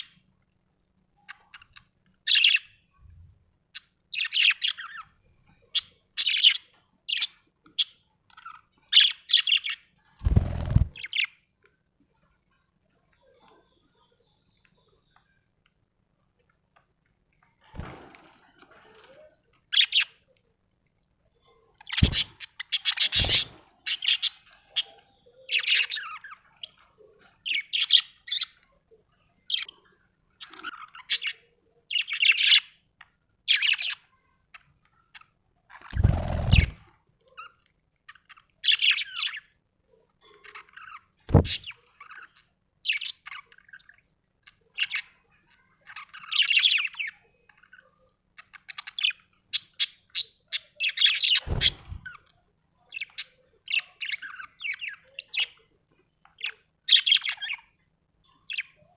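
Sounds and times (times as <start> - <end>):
budgerigar chirping and warbling: 21.9 - 26.4.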